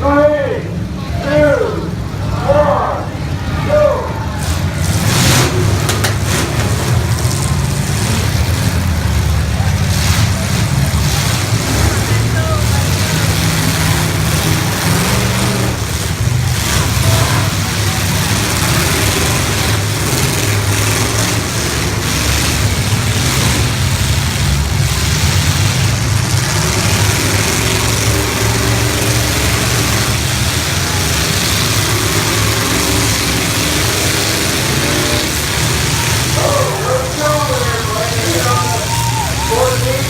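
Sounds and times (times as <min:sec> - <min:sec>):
car engines revving: 0:00.0 - 0:40.0.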